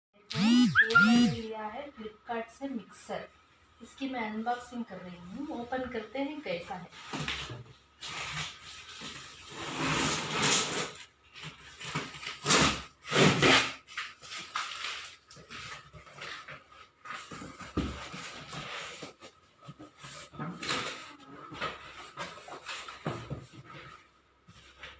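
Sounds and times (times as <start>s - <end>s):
cardboard packaging rustling and tearing: 7.0s - 24.9s.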